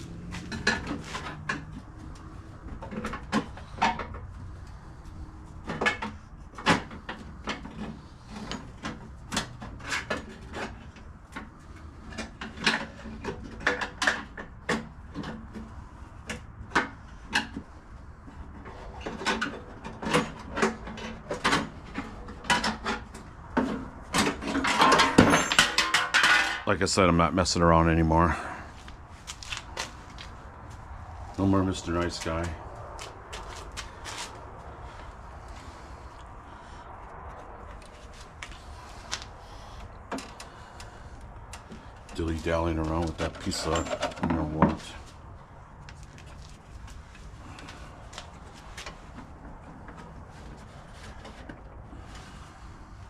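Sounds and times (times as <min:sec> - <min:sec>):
hand tools and metal parts clinking: 0:00.0 - 0:27.3, 0:37.6 - 0:45.2.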